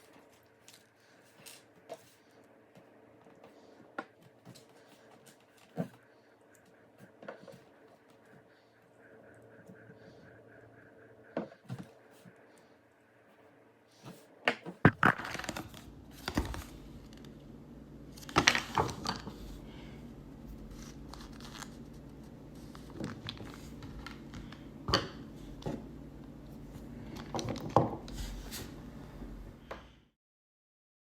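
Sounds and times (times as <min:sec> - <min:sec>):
low steady hum: 0:00.0 - 0:30.1
packaging crinkling and rustling: 0:14.9 - 0:17.3, 0:20.6 - 0:24.4.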